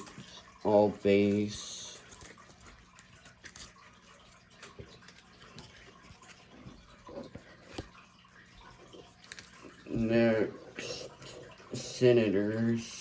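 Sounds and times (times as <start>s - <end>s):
trading cards rustling: 1.8s - 8.0s, 8.9s - 10.0s.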